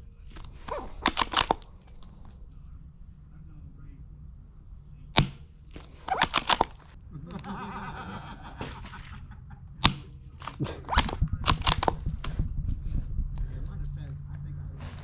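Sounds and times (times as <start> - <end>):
rifle bolt clicking: 0.4 - 2.6, 6.1 - 7.5, 9.8 - 14.1
suppressed rifle shot: 5.2 - 5.5.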